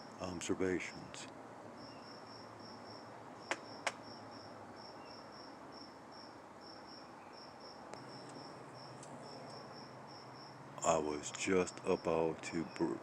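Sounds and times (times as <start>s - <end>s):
cricket chirping: 0.0s - 13.0s
sharp clicks: 3.5s - 4.0s.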